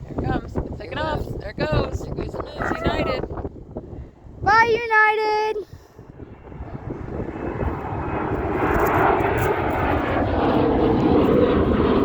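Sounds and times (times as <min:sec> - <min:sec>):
airliner taking off: 0:05.9 - 0:12.0.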